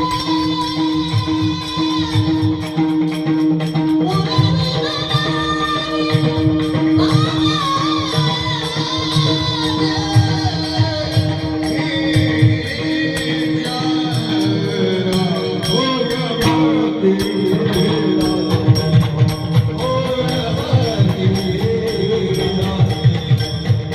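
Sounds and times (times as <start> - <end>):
jingling hand cymbals: 0.0 - 23.9
drum beat: 6.2 - 23.9.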